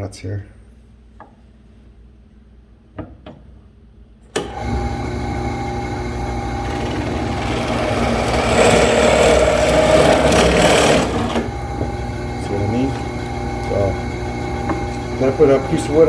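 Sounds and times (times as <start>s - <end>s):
drill press boring into wood: 4.4s - 16.0s.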